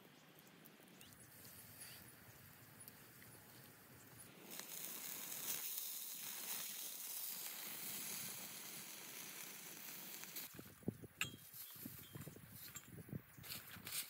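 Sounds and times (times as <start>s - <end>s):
food sizzling in a pan: 4.4s - 10.5s.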